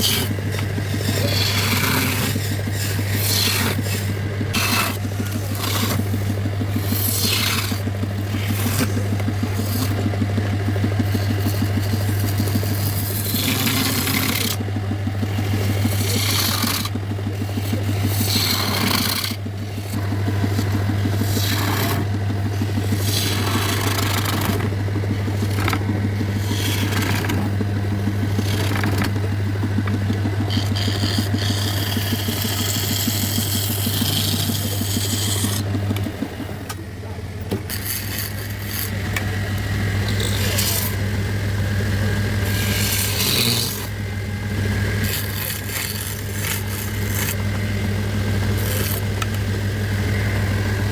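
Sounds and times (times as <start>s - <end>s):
wood scraping: 0.0s - 14.6s, 15.2s - 36.2s, 37.4s - 41.1s, 42.0s - 44.0s, 44.8s - 50.9s
power tool motor running: 0.0s - 50.9s.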